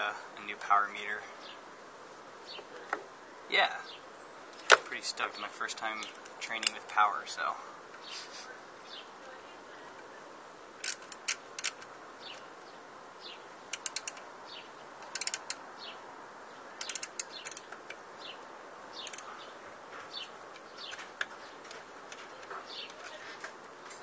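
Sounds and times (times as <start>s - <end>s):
birds chirping: 0.0s - 24.0s
sharp clicks: 10.8s - 12.5s, 13.7s - 14.3s, 15.0s - 15.6s, 16.8s - 18.0s, 19.0s - 19.4s.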